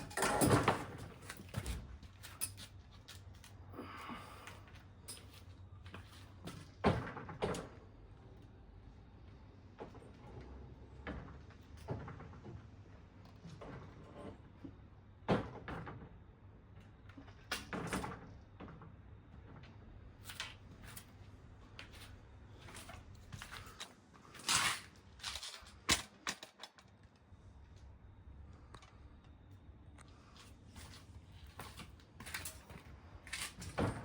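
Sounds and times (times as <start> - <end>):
tools clattering and scraping: 0.0 - 3.3, 22.7 - 26.9, 30.8 - 34.0.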